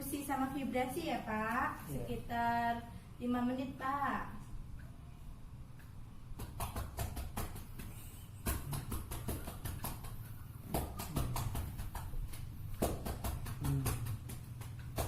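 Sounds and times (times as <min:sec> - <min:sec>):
cupped hands clapping on chest: 0:06.3 - 0:15.0.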